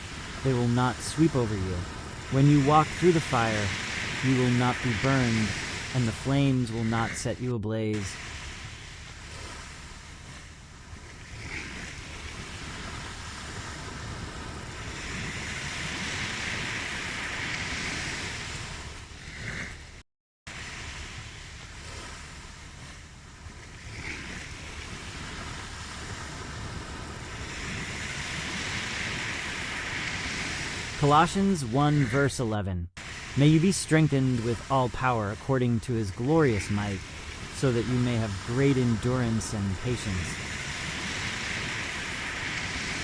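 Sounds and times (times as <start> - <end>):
ocean waves washing on shore: 0.0 - 43.0.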